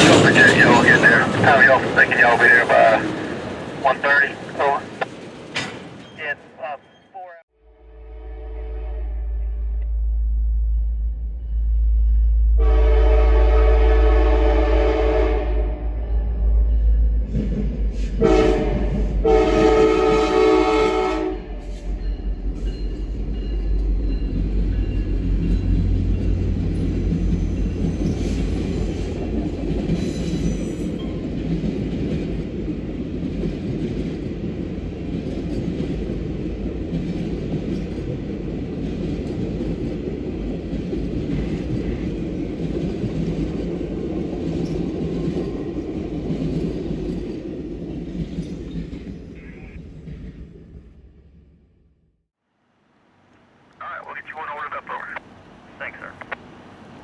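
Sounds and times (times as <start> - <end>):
train wheel noise: 0.0 - 7.0, 13.1 - 51.0
train rumbling past: 0.0 - 52.0
locomotive horn blasts: 7.7 - 9.8, 12.6 - 16.2, 18.2 - 21.6.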